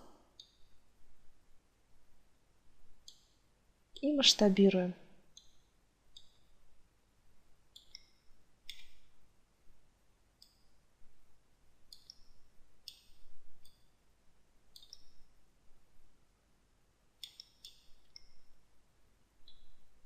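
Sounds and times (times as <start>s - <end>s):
computer mouse clicks: 0.4s - 0.8s, 3.0s - 3.4s, 5.3s - 6.6s, 7.7s - 9.2s, 11.9s - 13.8s, 14.7s - 15.3s, 17.2s - 18.6s, 19.4s - 19.8s.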